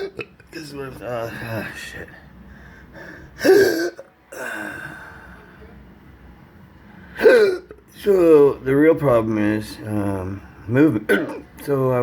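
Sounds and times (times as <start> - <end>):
man breathing: 2.4 - 3.4
man hiccuping: 3.4 - 4.5, 7.2 - 7.8, 11.1 - 11.5.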